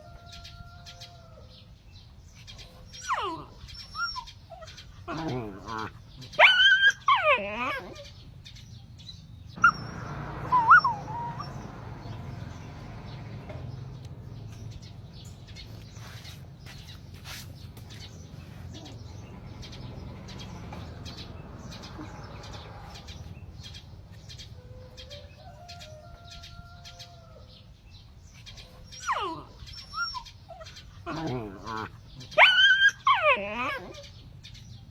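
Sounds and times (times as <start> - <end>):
puppy whimpering: 2.9 - 8.2, 9.6 - 11.6, 28.9 - 34.2.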